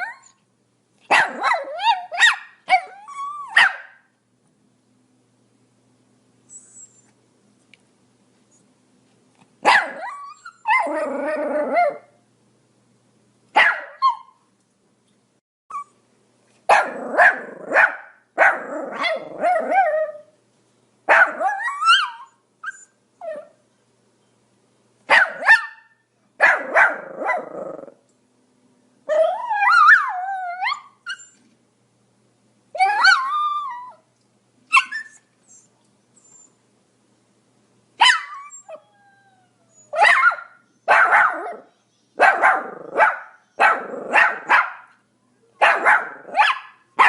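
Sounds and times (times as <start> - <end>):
dog whining yelp: 0.0 - 0.4, 1.1 - 3.9, 6.5 - 7.1, 9.7 - 12.1, 13.6 - 14.4, 15.7 - 16.0, 18.6 - 20.3, 21.1 - 23.6, 29.1 - 31.5, 32.8 - 34.0, 34.7 - 36.6, 38.0 - 44.6
small dog barking: 1.1 - 4.1, 9.6 - 10.9, 13.5 - 14.4, 16.7 - 19.9, 21.1 - 22.3, 25.1 - 27.8, 38.0 - 38.5, 39.9 - 45.0, 45.6 - 47.0.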